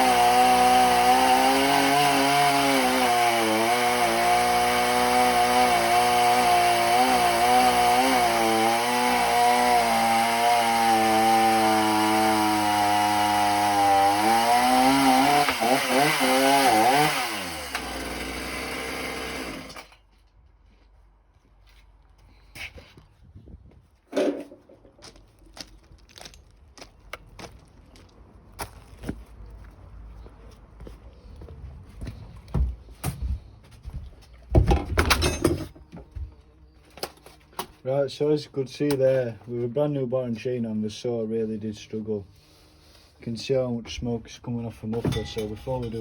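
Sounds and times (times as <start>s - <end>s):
chainsaw running under load: 0.0s - 20.0s.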